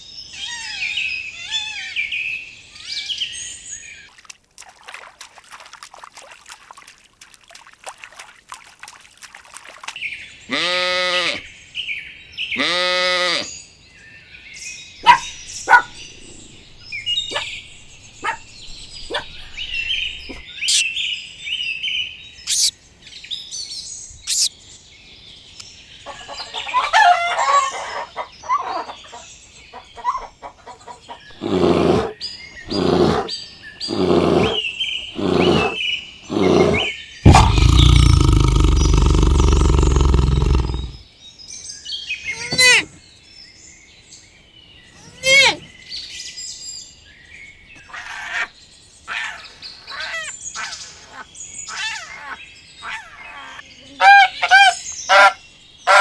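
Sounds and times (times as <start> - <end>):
deep animal calls: 15.0 - 20.8, 31.3 - 41.0
birds chirping and calling: 15.0 - 21.0, 22.5 - 22.7, 24.2 - 24.5, 26.1 - 40.9.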